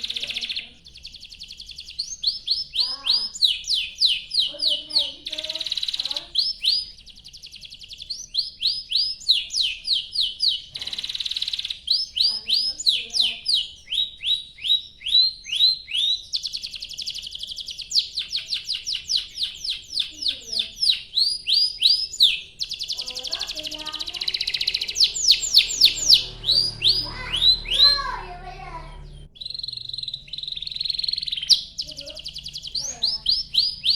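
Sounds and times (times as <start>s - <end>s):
canary singing: 0.0s - 33.9s.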